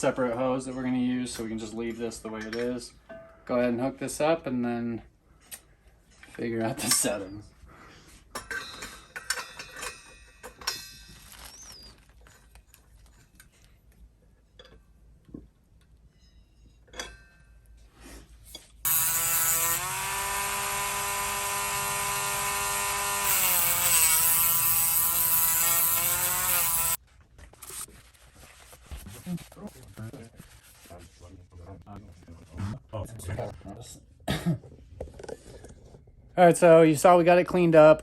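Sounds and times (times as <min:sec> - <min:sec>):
rotary power tool whining: 0:18.9 - 0:27.0.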